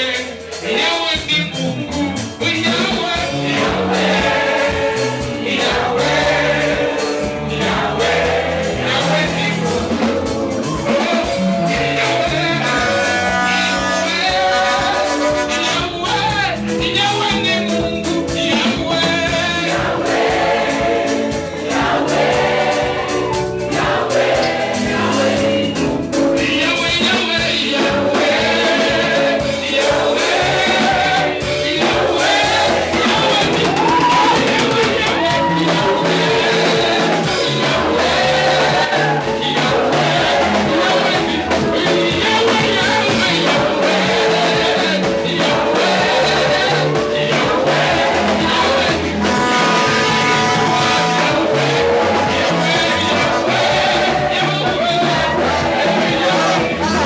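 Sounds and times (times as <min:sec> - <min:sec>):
gospel band playing: 0:00.0 - 0:57.0
choir singing: 0:02.6 - 0:15.8, 0:19.3 - 0:57.0.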